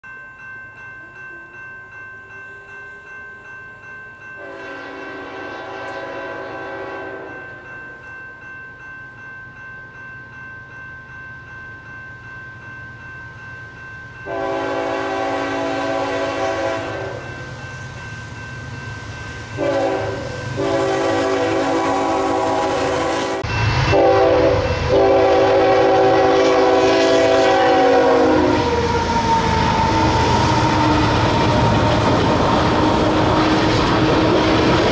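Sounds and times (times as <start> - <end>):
crossing bell ringing: 0.0 - 34.9
train passing with loud rush: 4.3 - 8.6, 11.6 - 34.9
locomotive air horn blasts: 4.4 - 7.4, 14.3 - 17.2, 19.6 - 28.8.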